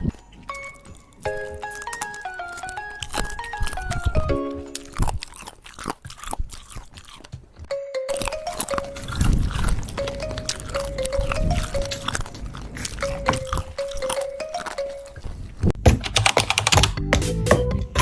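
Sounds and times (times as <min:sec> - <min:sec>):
background music plinking melody: 0:00.0 - 0:05.1, 0:07.7 - 0:15.2
crunchy food being chewed: 0:00.0 - 0:15.7.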